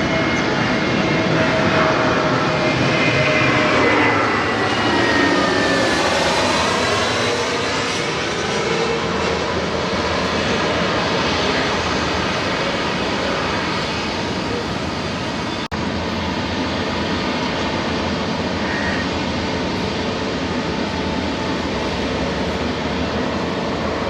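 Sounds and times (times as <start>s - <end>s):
jet airliner passing overhead: 0.0s - 24.0s.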